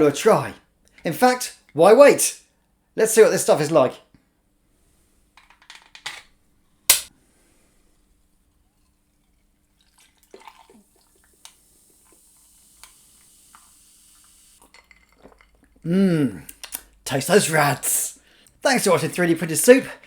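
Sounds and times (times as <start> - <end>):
faint hiss of liquid: 10.4 - 14.6.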